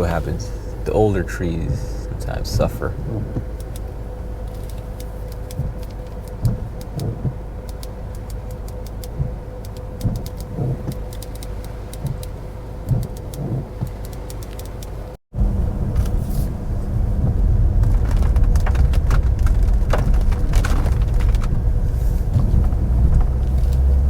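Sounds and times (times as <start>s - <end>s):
faint constant hum: 0.0s - 23.9s
car engine rumble inside cabin: 0.0s - 24.0s
soft thumps: 6.4s - 7.4s, 17.2s - 24.0s.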